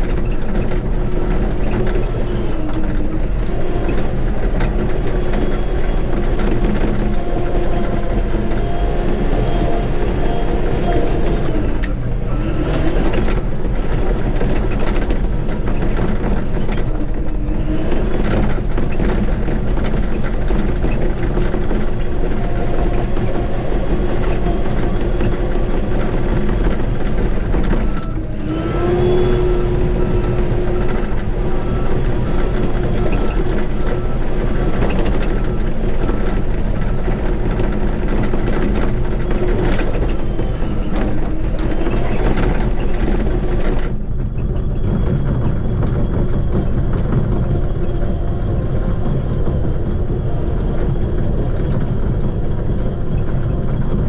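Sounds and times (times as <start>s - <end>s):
bulldozer diesel engine under load: 0.0s - 54.0s.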